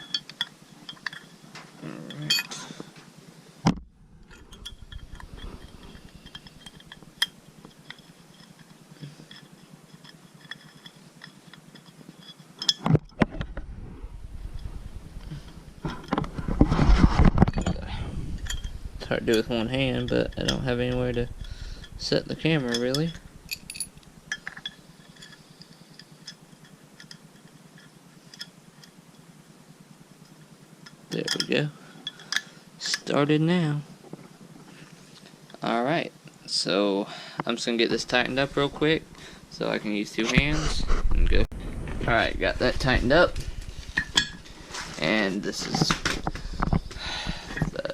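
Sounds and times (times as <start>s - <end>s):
low steady hum: 0.0s - 47.9s.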